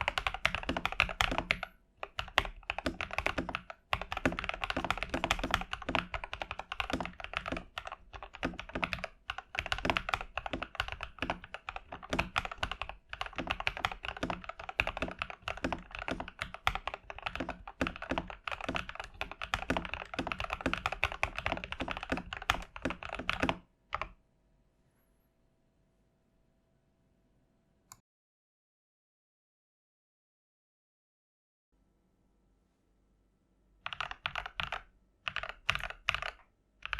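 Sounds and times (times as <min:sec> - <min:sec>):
fast typing on mechanical keyboard: 0:00.0 - 0:24.1, 0:33.8 - 0:36.9.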